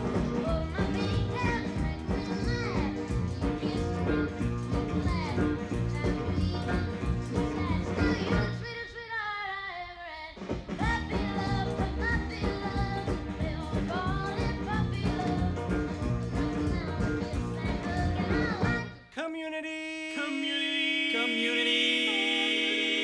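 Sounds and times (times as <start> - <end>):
song with band and singing: 0.0 - 9.2, 10.3 - 19.0.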